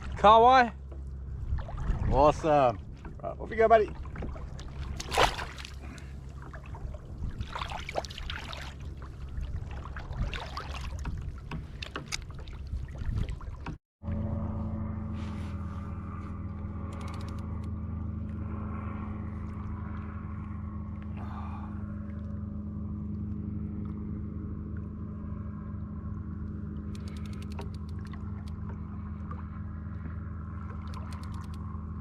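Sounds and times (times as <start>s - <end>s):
water sloshing: 0.0s - 13.8s, 21.9s - 31.9s
boat motor droning: 0.0s - 32.0s.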